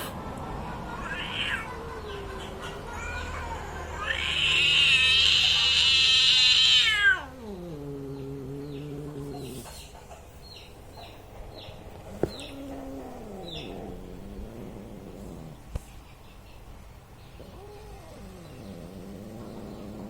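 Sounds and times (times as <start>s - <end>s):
cat caterwauling: 0.9s - 9.7s, 12.2s - 15.7s.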